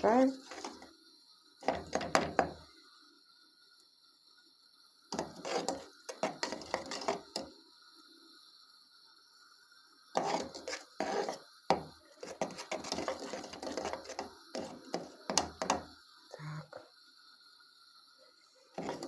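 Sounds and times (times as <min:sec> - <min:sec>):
fork scraping a saucepan: 0:05.2 - 0:07.4, 0:10.2 - 0:11.4, 0:12.2 - 0:15.1, 0:18.8 - 0:19.0.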